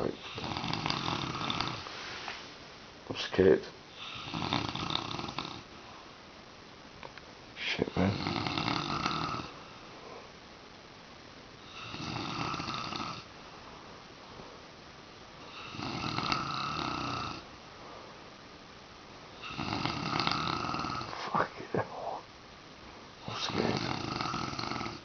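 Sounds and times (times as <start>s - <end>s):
man snoring: 0.0s - 1.8s, 4.0s - 5.7s, 7.9s - 9.6s, 11.6s - 13.3s, 15.5s - 17.5s, 19.4s - 22.3s, 23.2s - 25.0s.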